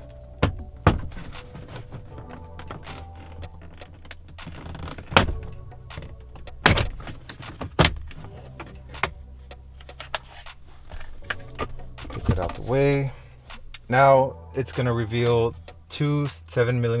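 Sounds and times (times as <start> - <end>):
low steady hum: 0.0 - 17.0
plastic clips snapping: 0.4 - 12.8.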